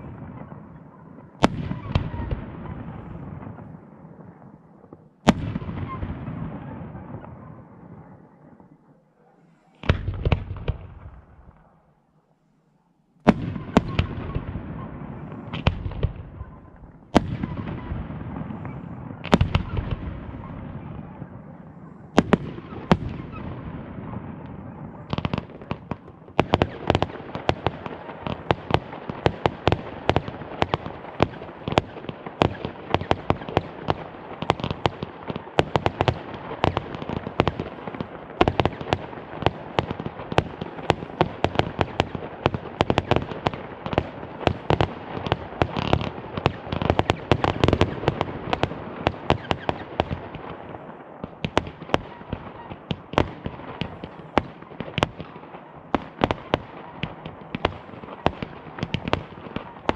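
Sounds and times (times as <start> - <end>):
rapid firework bangs and crackles: 0.0 - 11.7, 13.2 - 59.9.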